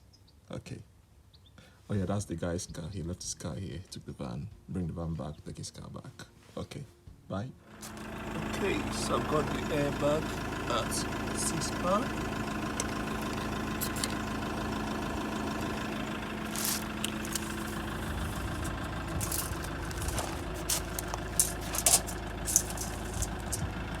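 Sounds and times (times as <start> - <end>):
van engine idling: 7.6 - 24.0.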